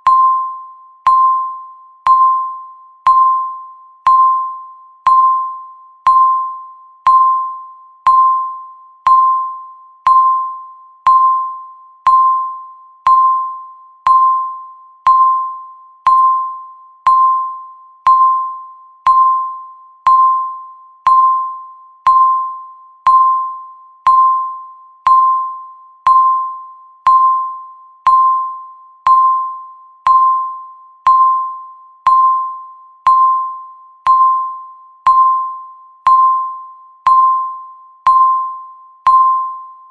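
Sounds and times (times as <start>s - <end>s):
countdown timer beeping: 0.0s - 39.9s.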